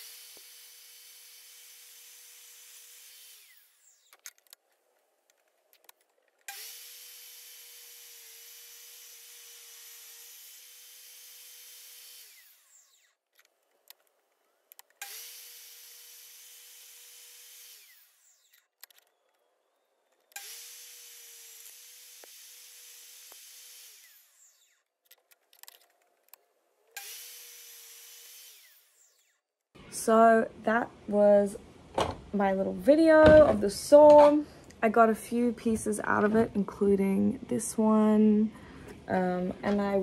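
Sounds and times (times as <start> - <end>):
table saw whining: 0.0 - 4.2, 6.5 - 13.2, 15.0 - 24.9, 26.9 - 30.0.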